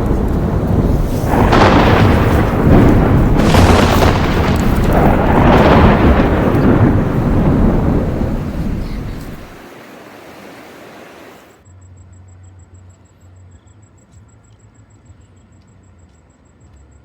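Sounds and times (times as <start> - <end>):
thunder rumbling and cracking: 0.0 - 11.4.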